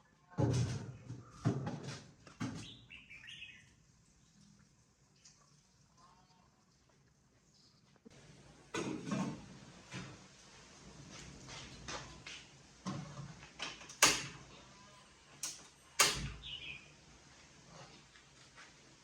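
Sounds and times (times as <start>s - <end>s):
objects knocking and clattering: 0.4s - 2.7s, 8.7s - 10.2s.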